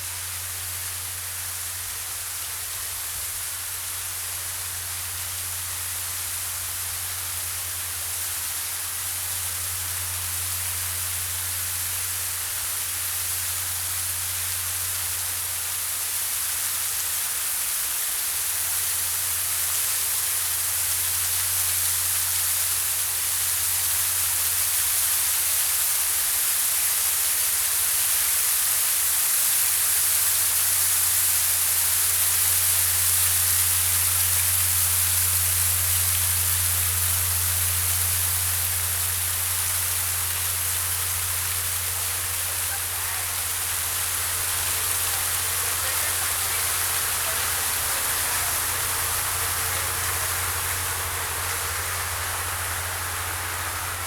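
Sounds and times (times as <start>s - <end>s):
static-like hiss: 0.0s - 54.0s.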